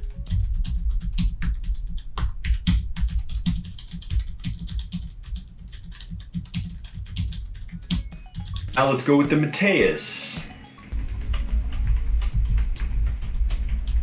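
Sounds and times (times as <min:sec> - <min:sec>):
faint background music: 0:00.0 - 0:14.0
mechanical keyboard typing: 0:00.2 - 0:08.6.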